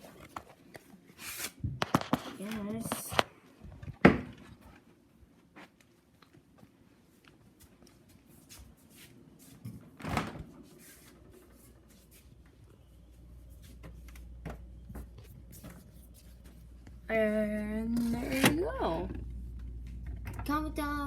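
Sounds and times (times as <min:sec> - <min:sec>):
low steady hum: 0:09.7 - 0:21.0
refrigerator door opening: 0:09.9 - 0:10.6.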